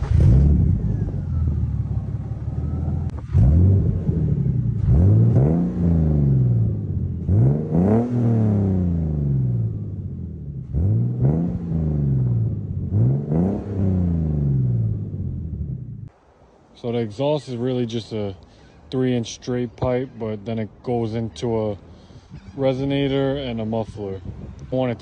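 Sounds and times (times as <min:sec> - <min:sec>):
car engine revving: 0:00.0 - 0:16.1.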